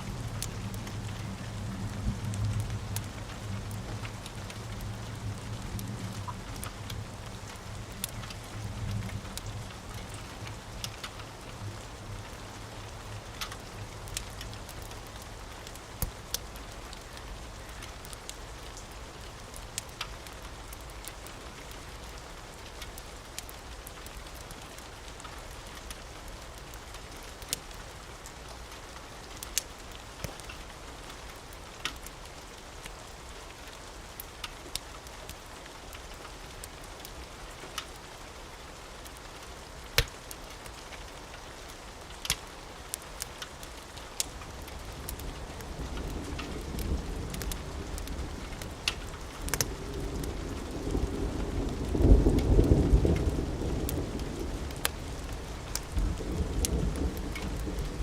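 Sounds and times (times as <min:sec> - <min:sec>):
steady rain: 0:00.0 - 0:58.0
wood fire crackling: 0:00.0 - 0:58.0
thunder rumble: 0:44.5 - 0:58.0.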